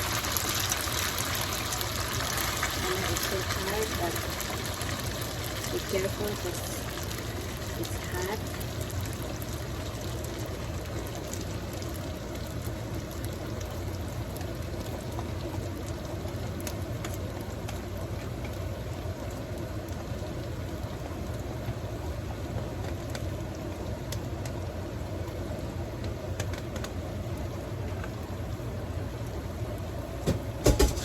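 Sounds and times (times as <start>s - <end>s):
pan simmering hiss: 0.0s - 31.0s
faint pops and crackles: 7.8s - 20.3s, 21.6s - 25.4s, 26.0s - 27.1s.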